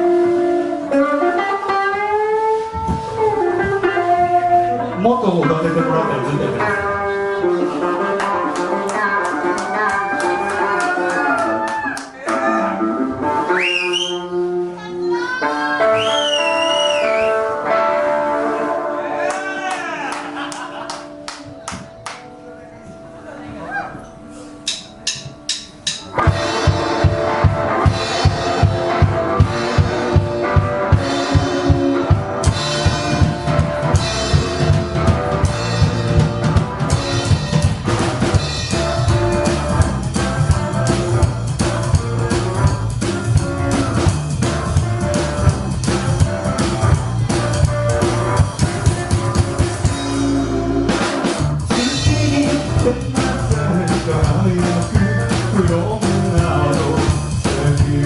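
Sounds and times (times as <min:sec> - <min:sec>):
bass and electric guitar: 0:00.0 - 0:58.0
rockabilly band playing live: 0:00.0 - 0:58.0
drum beat: 0:24.7 - 0:58.0.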